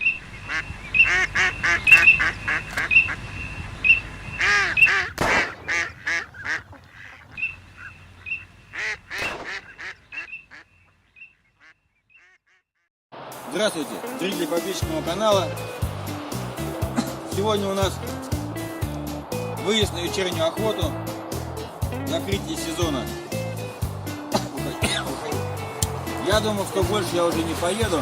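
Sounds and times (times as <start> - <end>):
duck quacking: 0.4 - 12.9.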